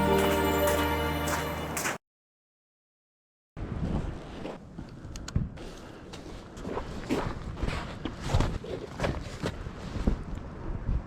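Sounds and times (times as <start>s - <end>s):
background music with held notes: 0.0s - 2.0s.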